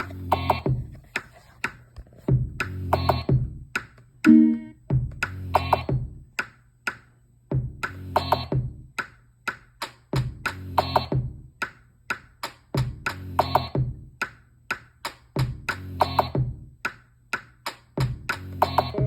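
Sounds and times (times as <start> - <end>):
drum machine beat: 0.0 - 19.0
synth chord: 4.3 - 4.8.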